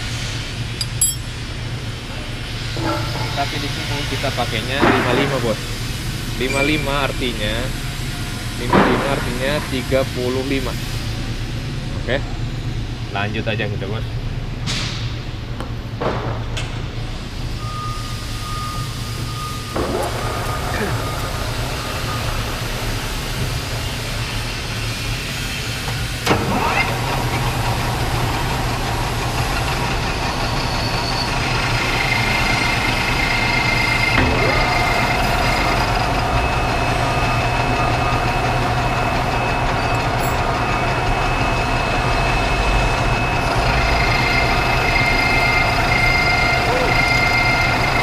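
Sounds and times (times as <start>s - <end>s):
high whine: 0.0s - 4.8s, 16.8s - 26.6s, 27.3s - 48.0s
lathe motor hum: 20.0s - 48.0s.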